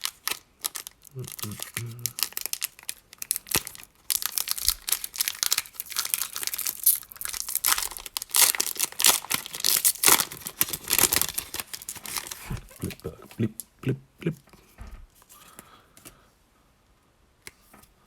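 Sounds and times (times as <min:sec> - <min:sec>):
foil wrapper tearing and crinkling: 0:00.0 - 0:12.9.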